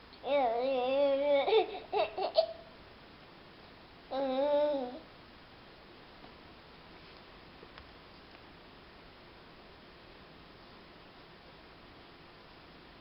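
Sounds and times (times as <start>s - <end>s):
young child babbling: 0.2s - 2.6s, 4.1s - 5.1s.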